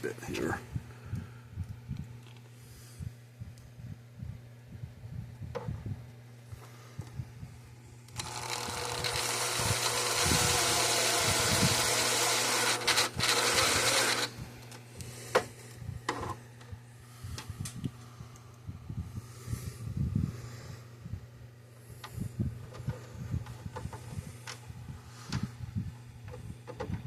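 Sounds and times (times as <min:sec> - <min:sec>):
electric drill running: 0:08.1 - 0:14.4.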